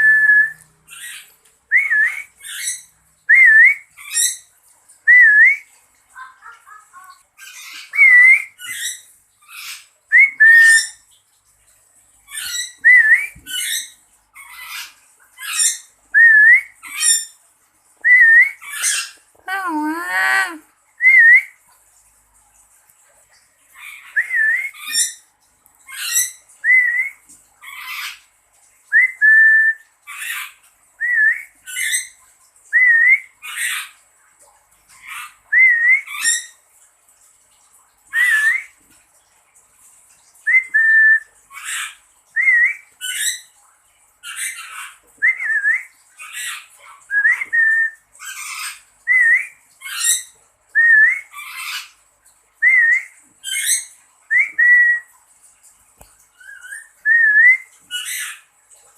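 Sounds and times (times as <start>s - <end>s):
parrot squawking: 0.9s - 2.9s, 18.6s - 20.6s.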